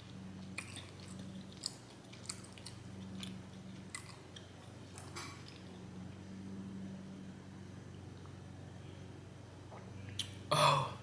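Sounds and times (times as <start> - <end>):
low steady hum: 0.0 - 11.0
wet chewing mouth clicks and smacks: 0.4 - 5.8.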